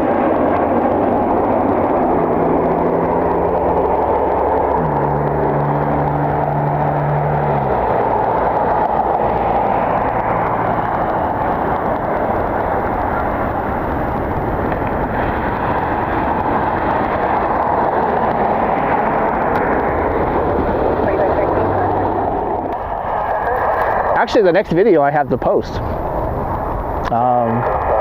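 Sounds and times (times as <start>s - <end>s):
jet engines rushing: 0.0s - 28.0s.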